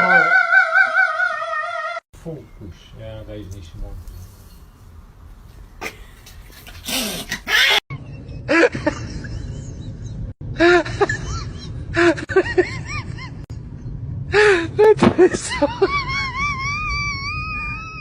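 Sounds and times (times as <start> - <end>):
animal cries rising and falling: 0.0 - 2.0, 6.8 - 7.8.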